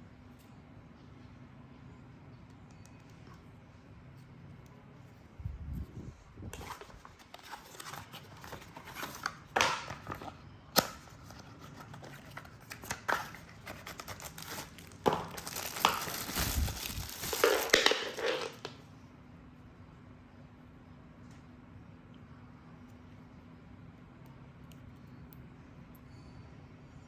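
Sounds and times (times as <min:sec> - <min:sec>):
plastic packaging crinkling and tearing: 0:06.6 - 0:18.8.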